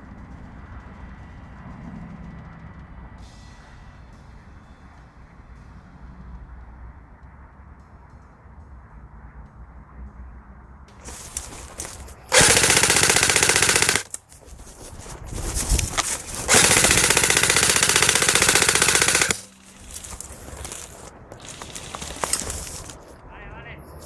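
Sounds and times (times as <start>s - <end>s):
airsoft gun full auto bursts: 11.0s - 14.2s, 15.8s - 23.0s.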